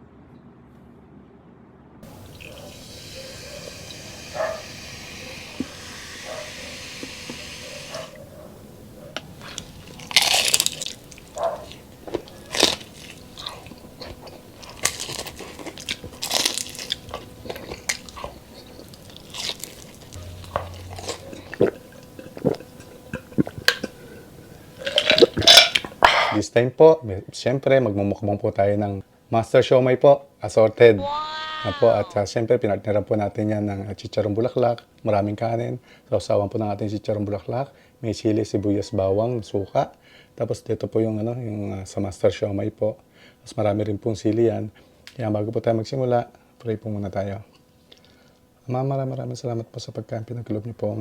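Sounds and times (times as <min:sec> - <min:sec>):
steady hiss: 0:02.0 - 0:26.4
crunching bites and chewing: 0:09.1 - 0:24.0.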